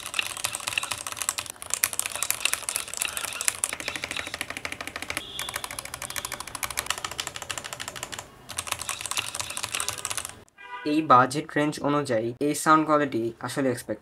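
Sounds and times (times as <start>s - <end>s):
mechanical keyboard typing: 0.0s - 10.4s.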